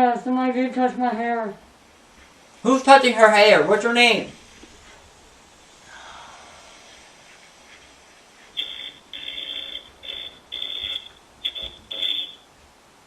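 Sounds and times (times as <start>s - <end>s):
high-pitched electronic beeping: 8.6s - 12.4s.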